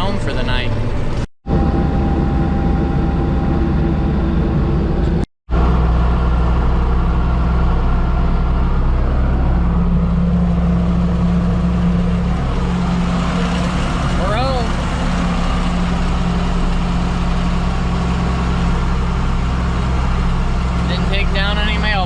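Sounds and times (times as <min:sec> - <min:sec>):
combine diesel engine running: 0:00.0 - 0:22.0.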